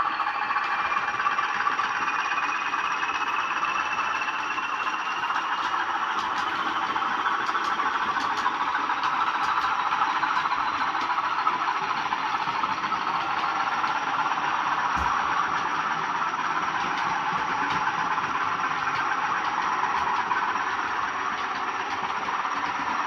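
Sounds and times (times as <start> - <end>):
model train diesel engine sound: 0.0 - 23.0.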